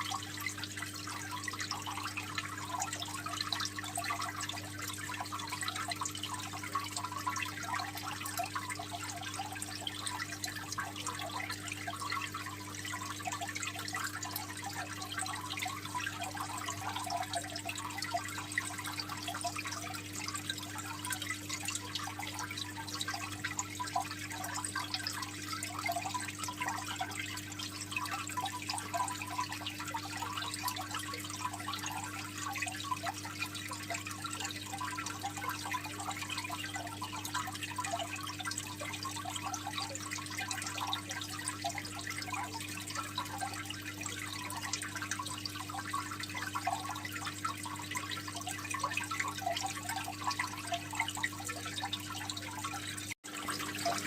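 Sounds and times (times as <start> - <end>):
water trickling and splashing: 0.0 - 54.0.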